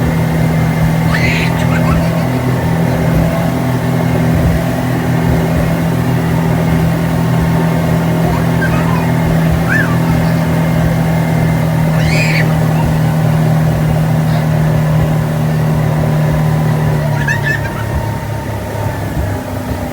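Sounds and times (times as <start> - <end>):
speedboat engine running: 0.0 - 19.9
short voice calls: 8.2 - 10.8.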